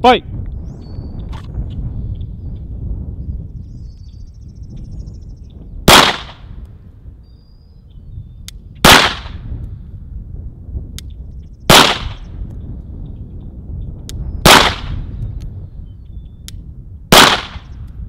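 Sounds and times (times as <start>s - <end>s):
pistol shots with echo: 5.9s - 6.5s, 8.8s - 9.4s, 11.7s - 12.3s, 14.4s - 15.1s, 17.1s - 17.8s.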